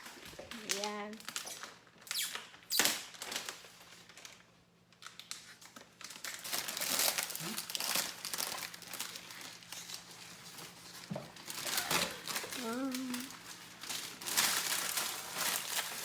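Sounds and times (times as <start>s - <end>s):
packaging crinkling: 0.0s - 16.0s
packaging tearing: 0.6s - 10.4s, 11.4s - 16.0s.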